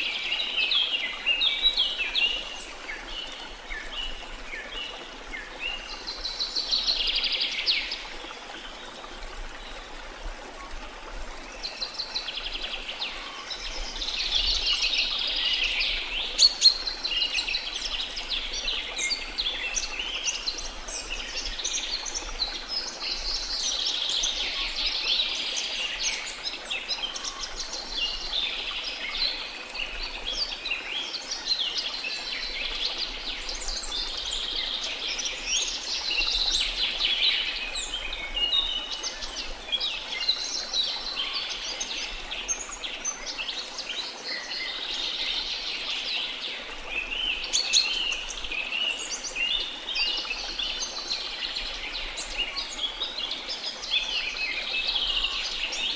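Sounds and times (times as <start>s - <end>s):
birds singing and chirping: 11.5s - 55.9s.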